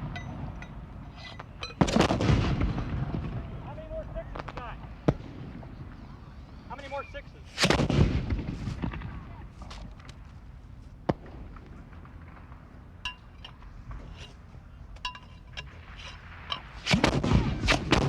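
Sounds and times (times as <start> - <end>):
sharp crack: 0.0 - 6.0, 7.5 - 14.5, 15.5 - 18.0
gunfire: 1.8 - 3.7, 7.6 - 9.4, 16.7 - 18.0
metallic clinks of rifles handled: 13.0 - 16.8.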